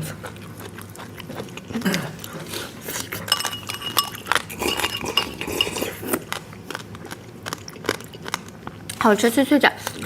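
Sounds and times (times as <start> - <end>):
tableware clinking: 3.3 - 6.0.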